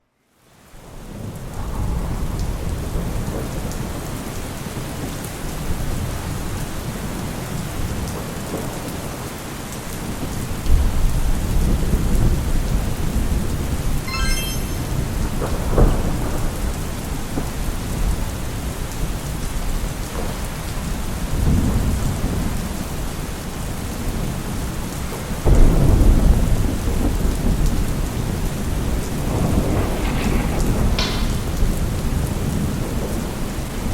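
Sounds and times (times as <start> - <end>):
steady rain: 0.2 - 14.6, 15.2 - 33.9
rolling thunder: 25.4 - 33.6.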